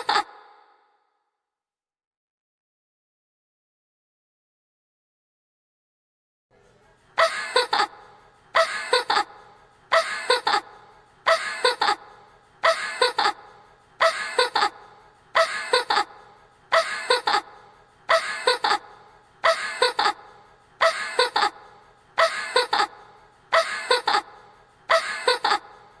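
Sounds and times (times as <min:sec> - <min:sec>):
girl's cartoon laugh: 0:00.0 - 0:00.3, 0:07.2 - 0:07.9, 0:08.6 - 0:09.3, 0:09.9 - 0:10.6, 0:11.3 - 0:12.0, 0:12.6 - 0:13.4, 0:14.0 - 0:14.8, 0:15.4 - 0:16.1, 0:16.7 - 0:17.4, 0:18.1 - 0:18.8, 0:19.4 - 0:20.2, 0:20.8 - 0:21.6, 0:22.2 - 0:24.3, 0:24.9 - 0:25.8.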